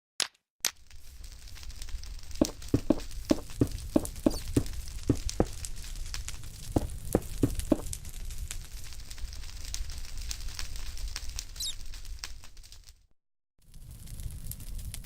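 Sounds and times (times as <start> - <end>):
sharp knocks: 2.4 - 5.7, 6.8 - 7.9.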